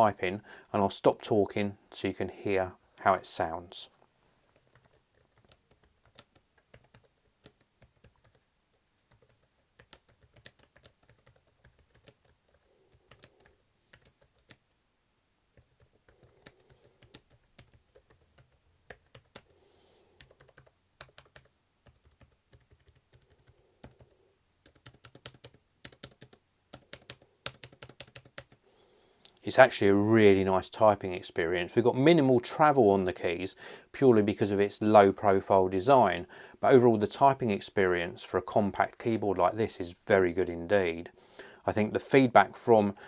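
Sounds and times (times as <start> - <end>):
soft keyboard typing: 4.5 - 14.8, 15.5 - 28.6.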